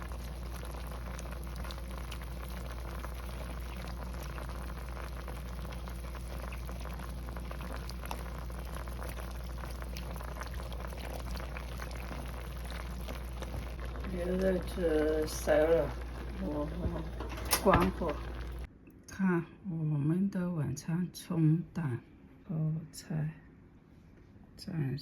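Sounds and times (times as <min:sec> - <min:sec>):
pot boiling with bubbling crackle: 0:00.0 - 0:18.7.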